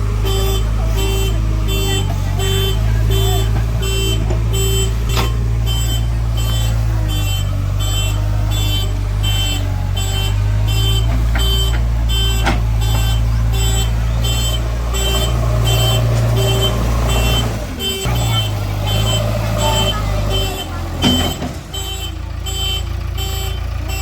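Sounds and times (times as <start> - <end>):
diesel engine running: 0.0 - 24.0
reversing alarm beeping: 0.0 - 24.0.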